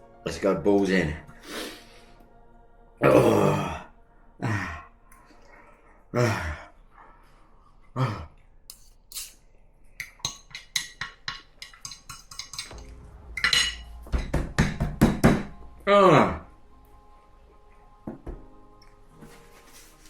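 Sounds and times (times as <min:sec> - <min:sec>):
cutlery clinking on a dish: 0:10.1 - 0:12.8.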